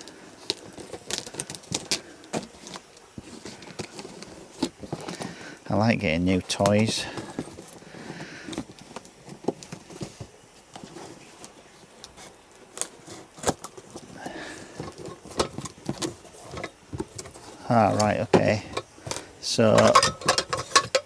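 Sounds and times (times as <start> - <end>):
packaging rustling: 0.0 - 21.0
clicks and taps of parts: 14.8 - 21.0.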